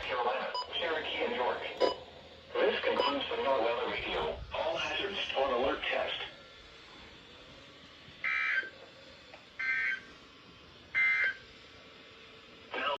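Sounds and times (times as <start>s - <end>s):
faint radio hiss: 2.5s - 7.5s
two-tone digital data squawks: 2.9s - 3.3s, 8.3s - 8.7s, 9.6s - 10.0s, 11.0s - 11.4s.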